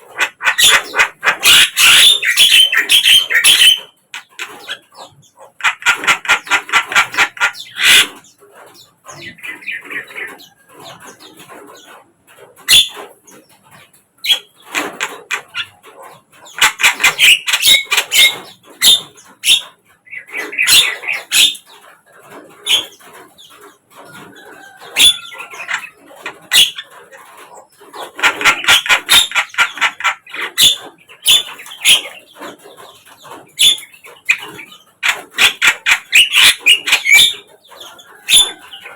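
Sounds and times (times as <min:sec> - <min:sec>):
myna harsh chattering: 0:00.0 - 0:08.2, 0:28.0 - 0:32.1.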